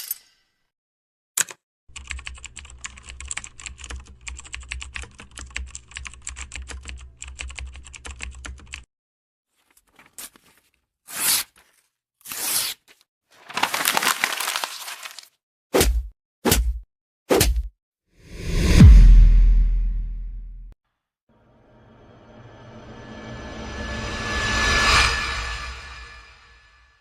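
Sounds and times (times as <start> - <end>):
typing on a keyboard: 1.4 - 8.9
low hum: 18.4 - 20.7.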